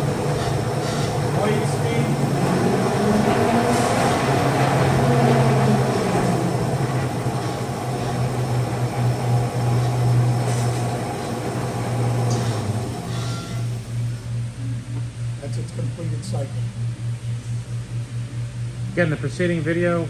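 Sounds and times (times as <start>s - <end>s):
band saw motor hum: 0.0s - 14.6s.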